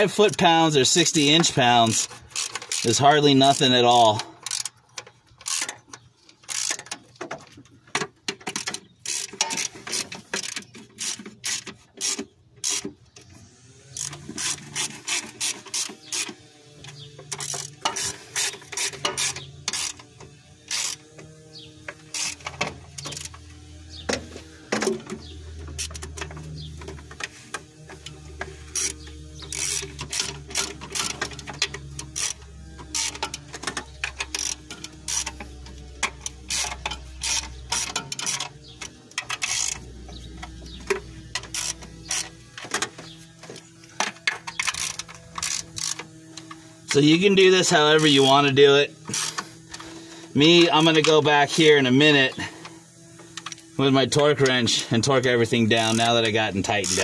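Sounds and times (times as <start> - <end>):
ratchet wrench clicking: 1.1 - 4.8, 5.4 - 7.0, 8.5 - 12.9, 13.9 - 16.3, 17.2 - 21.1, 21.8 - 23.6, 28.0 - 43.3, 43.9 - 47.3, 48.9 - 50.0, 55.7 - 57.0
steady low hum: 11.6 - 57.0.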